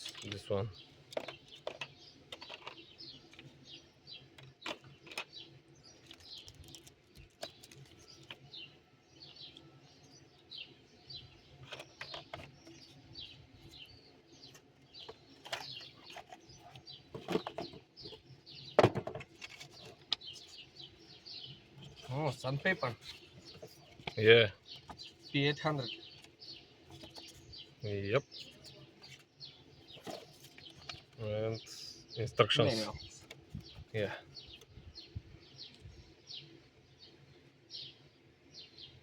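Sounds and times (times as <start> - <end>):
clicks and knocks of parts handled: 0.0 - 0.5, 1.1 - 3.5
small birds chirping: 0.0 - 39.0.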